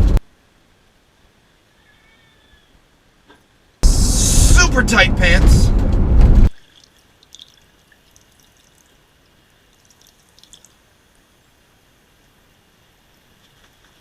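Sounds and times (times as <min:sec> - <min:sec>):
water dripping from paddle: 0:06.6 - 0:10.8.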